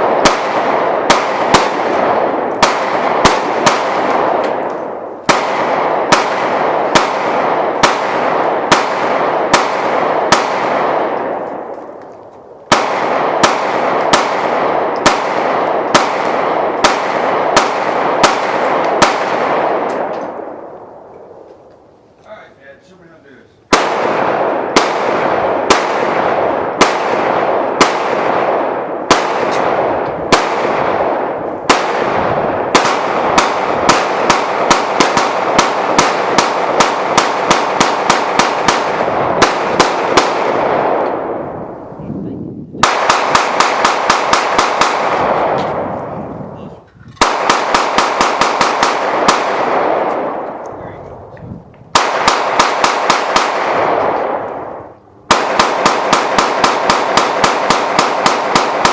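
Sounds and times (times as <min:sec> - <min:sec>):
gunshots echoing: 0:00.0 - 0:21.5, 0:23.7 - 0:51.0, 0:51.9 - 0:58.9.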